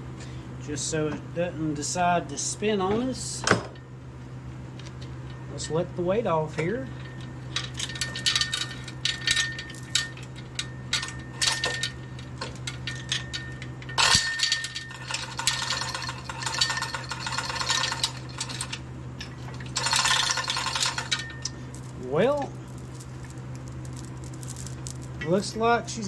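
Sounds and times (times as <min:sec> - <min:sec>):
metal clinking and rattling: 0:07.0 - 0:25.3.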